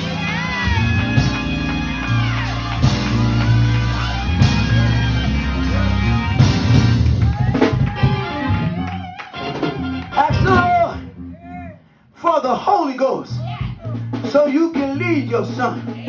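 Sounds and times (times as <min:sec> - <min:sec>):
drum kit: 0:00.0 - 0:11.1, 0:13.5 - 0:16.0
held bass notes: 0:00.0 - 0:11.9
band music: 0:00.0 - 0:16.0.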